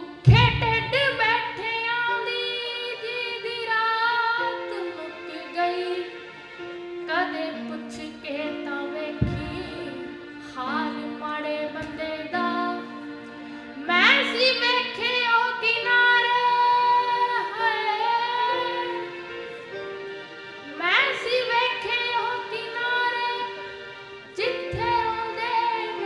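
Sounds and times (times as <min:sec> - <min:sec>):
low thump: 0:09.2 - 0:09.9.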